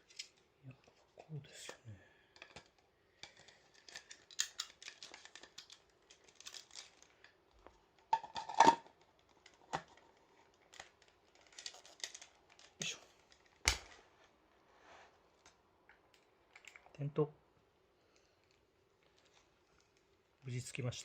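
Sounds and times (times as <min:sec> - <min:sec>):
plastic clicks and rattles: 0:02.3 - 0:14.0.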